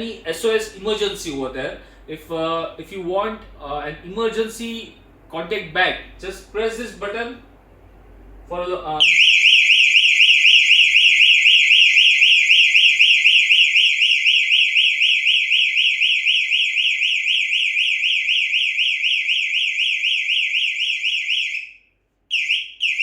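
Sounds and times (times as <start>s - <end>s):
electronic alarm siren warbling: 9.0s - 23.0s.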